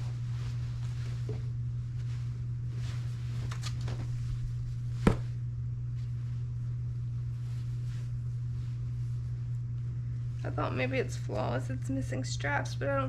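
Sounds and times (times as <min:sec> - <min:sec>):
fabric rustling: 0:00.0 - 0:09.5
steady low hum: 0:00.0 - 0:13.0.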